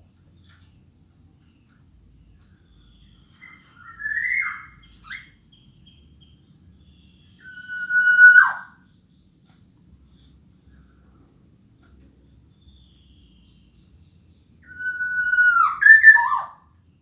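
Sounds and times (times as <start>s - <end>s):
high insect drone: 0.0s - 17.0s
bird whining call: 3.4s - 5.3s, 7.4s - 8.8s, 14.7s - 16.6s.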